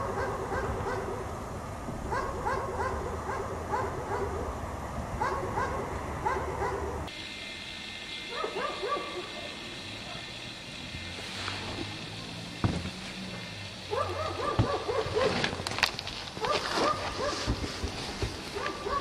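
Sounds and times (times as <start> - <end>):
dog barking: 0.0 - 1.2, 2.1 - 4.5, 5.2 - 7.0, 8.3 - 9.4, 13.9 - 15.4, 16.4 - 17.5, 18.5 - 19.0.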